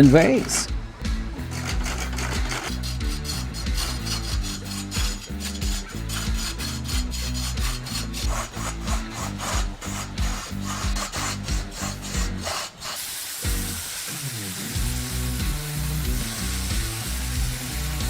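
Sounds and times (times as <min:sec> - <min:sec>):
tool scraping wood: 0:00.0 - 0:00.7, 0:01.4 - 0:13.7
background music with steady beat: 0:00.0 - 0:18.0
hiss: 0:01.4 - 0:18.0.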